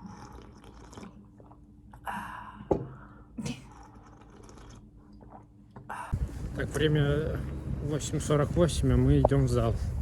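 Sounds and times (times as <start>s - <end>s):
eating sounds: 0.0s - 2.0s, 3.5s - 5.5s.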